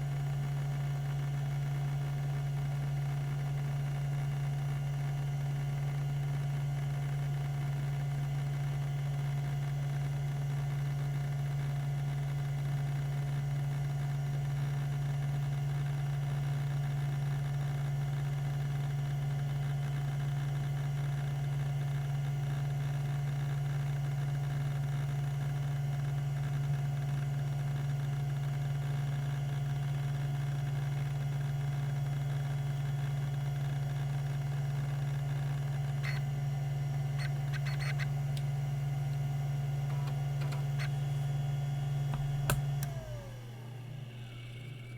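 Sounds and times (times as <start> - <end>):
hard drive humming: 29.5 - 44.9.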